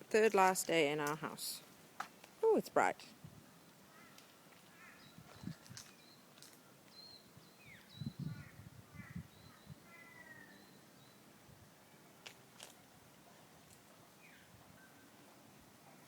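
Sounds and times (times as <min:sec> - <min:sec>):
small birds chirping: 0:03.6 - 0:11.3.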